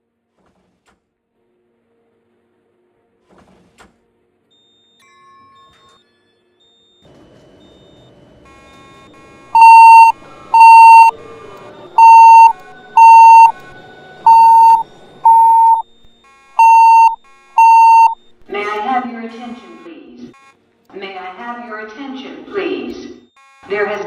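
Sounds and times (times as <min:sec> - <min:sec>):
fire alarm electronic beeps: 0:09.6 - 0:11.1, 0:12.0 - 0:13.6, 0:14.3 - 0:15.8, 0:16.6 - 0:18.2.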